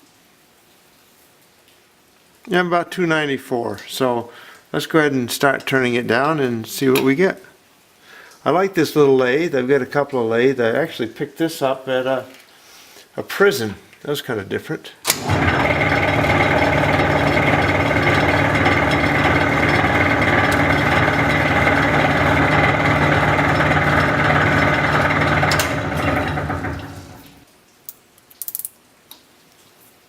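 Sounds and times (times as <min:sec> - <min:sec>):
lathe spinning down: 0:15.1 - 0:27.4
metal lathe running: 0:15.1 - 0:27.4.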